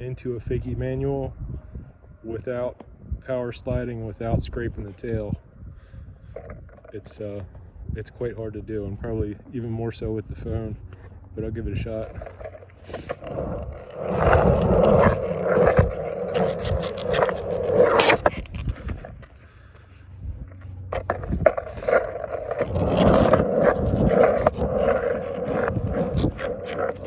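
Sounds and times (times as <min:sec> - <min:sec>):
skateboard wheels rolling: 0:11.9 - 0:27.0
skateboard clack: 0:12.0 - 0:19.4, 0:20.5 - 0:27.0.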